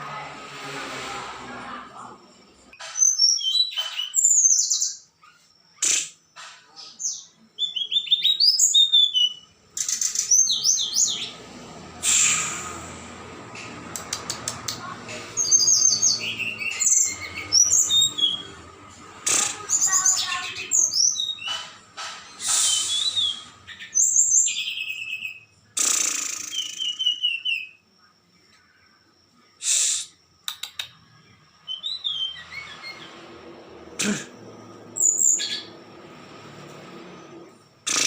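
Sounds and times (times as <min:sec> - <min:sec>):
songbirds chirping: 0:01.5 - 0:12.4, 0:13.1 - 0:25.8, 0:26.4 - 0:37.9
harsh noisy bursts: 0:11.6 - 0:14.0, 0:35.6 - 0:38.0.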